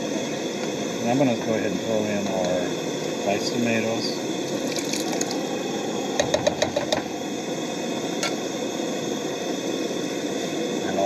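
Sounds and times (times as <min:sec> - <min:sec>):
stove burner hiss: 0:00.0 - 0:11.0
tomatoes emptied into pot: 0:04.6 - 0:05.3.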